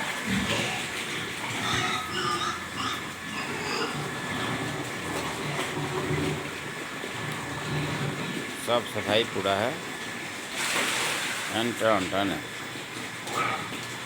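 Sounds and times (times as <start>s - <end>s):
pigs grunting: 0.0s - 10.0s, 13.2s - 13.9s.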